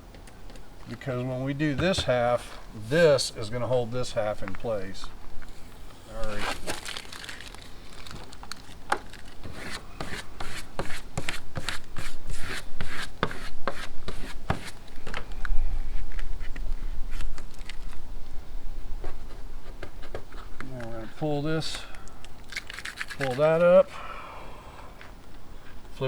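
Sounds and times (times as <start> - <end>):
tape crackling and rustling: 5.3 - 12.2, 13.0 - 23.9.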